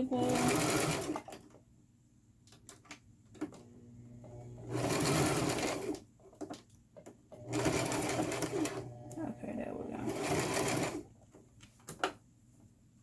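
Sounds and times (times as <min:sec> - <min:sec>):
electric sewing machine stitching: 0:00.0 - 0:01.4, 0:03.5 - 0:06.0, 0:07.4 - 0:09.2, 0:10.0 - 0:11.1.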